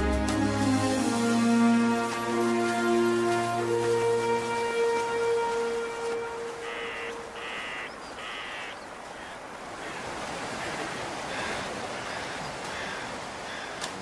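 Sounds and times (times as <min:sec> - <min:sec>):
bird cawing: 0:06.6 - 0:14.0.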